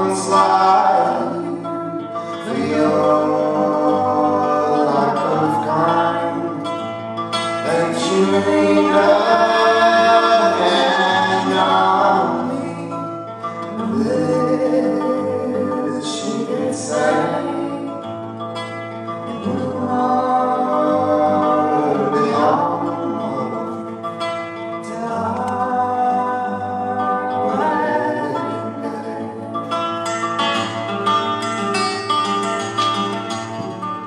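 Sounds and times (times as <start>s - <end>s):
person singing: 0.0s - 6.8s, 7.6s - 18.1s, 19.3s - 24.1s, 24.8s - 29.8s
acoustic guitar: 0.0s - 34.0s.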